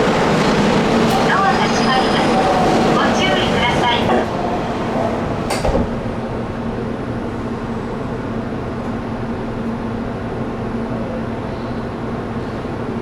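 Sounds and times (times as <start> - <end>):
stopped train hum: 0.0 - 13.0
sliding train door shutting: 0.6 - 2.5, 3.2 - 6.2.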